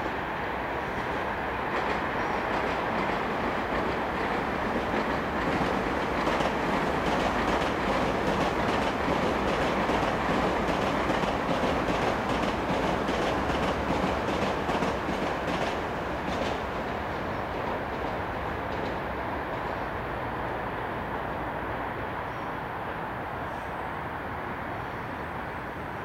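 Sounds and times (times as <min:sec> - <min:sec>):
rail joint clicks: 0:00.0 - 0:20.2
train wheels rumbling on rail: 0:00.0 - 0:26.0.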